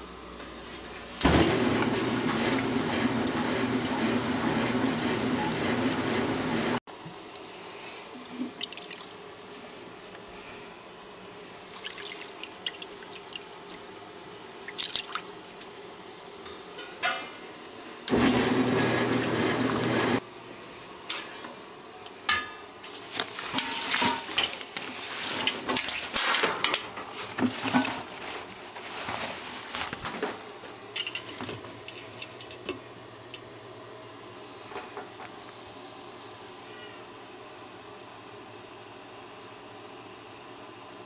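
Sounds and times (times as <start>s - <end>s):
washing machine running: 1.2s - 6.8s, 11.7s - 14.0s, 18.1s - 20.2s
water sloshing in drum: 23.4s - 26.2s.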